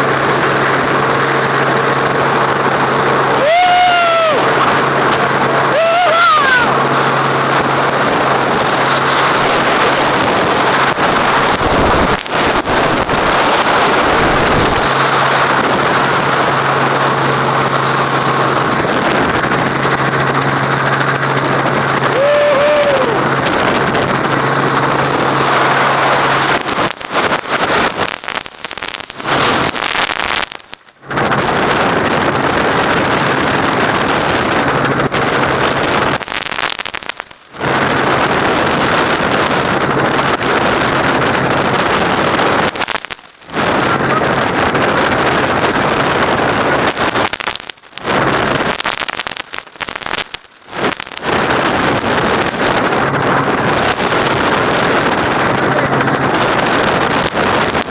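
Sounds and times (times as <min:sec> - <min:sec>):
helicopter rotor and engine roar: 0:00.0 - 0:28.2, 0:31.0 - 0:36.2, 0:43.5 - 0:46.8, 0:51.4 - 0:57.6.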